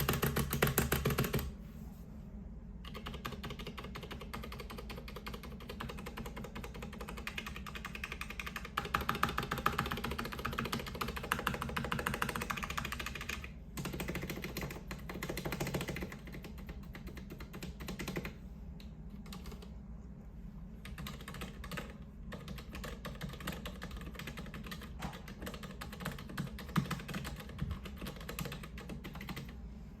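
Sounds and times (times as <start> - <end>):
muted keyboard keystroke clicks: 0.0 - 1.5.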